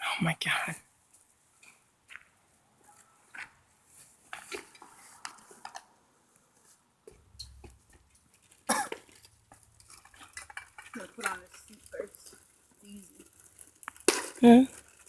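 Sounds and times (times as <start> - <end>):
small hard objects clinking: 7.4 - 15.0.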